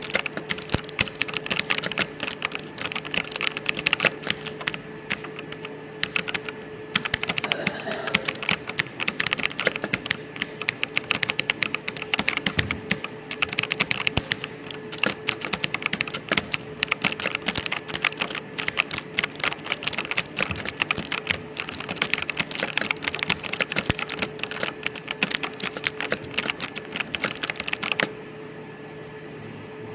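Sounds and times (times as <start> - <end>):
fast keyboard typing: 0.0 - 28.2
steady hum: 0.0 - 29.9.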